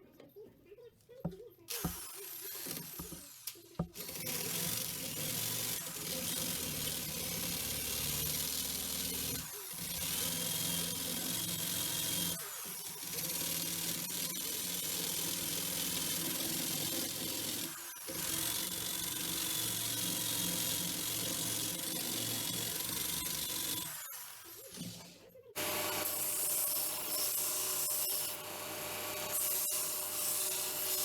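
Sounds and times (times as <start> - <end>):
electric power tool running: 1.7 - 25.0, 25.6 - 31.0.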